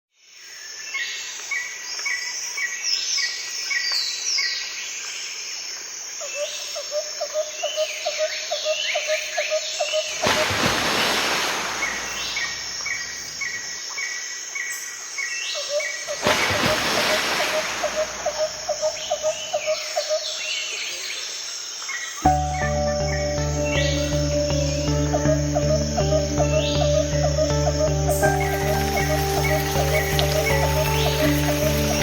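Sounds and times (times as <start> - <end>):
birds chirping: 9.7 - 14.0, 15.6 - 21.2, 22.2 - 32.0.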